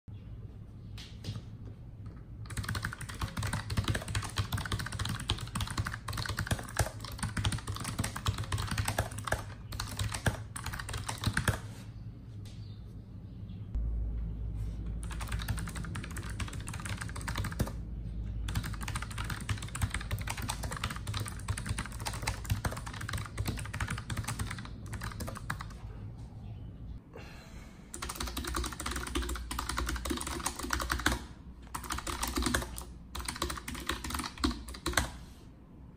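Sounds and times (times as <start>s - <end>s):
mechanical keyboard typing: 2.4s - 11.7s, 15.0s - 17.8s, 18.5s - 25.8s, 28.0s - 35.2s.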